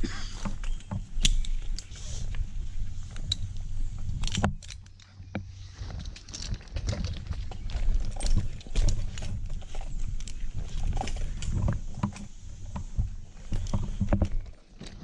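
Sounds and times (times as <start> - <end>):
metal climbing gear clinking: 3.1 - 12.7.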